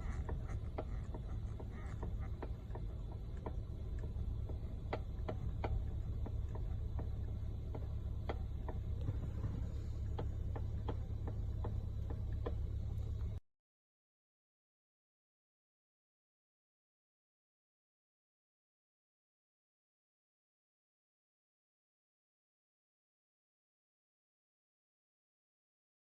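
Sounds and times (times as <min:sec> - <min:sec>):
steady low hum: 0:00.0 - 0:13.4
steering wheel clicking: 0:00.0 - 0:13.4.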